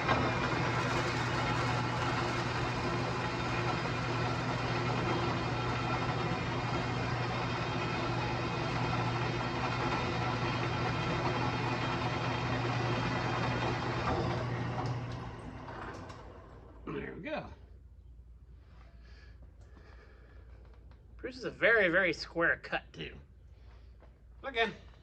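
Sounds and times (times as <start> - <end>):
power saw cutting: 0.0 - 16.2.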